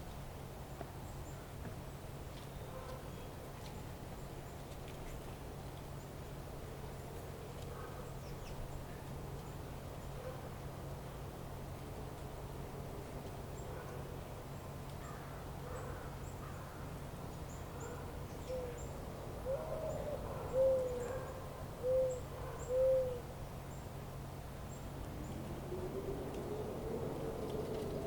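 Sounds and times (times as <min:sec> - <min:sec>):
steady low hum: 0:18.7 - 0:28.0
bird hooting: 0:19.4 - 0:23.3.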